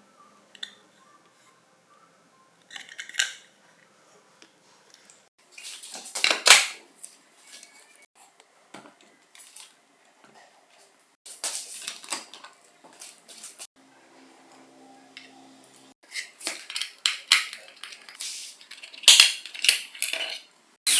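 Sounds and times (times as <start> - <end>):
metal parts and tools clinking: 2.7 - 3.5, 16.1 - 20.5.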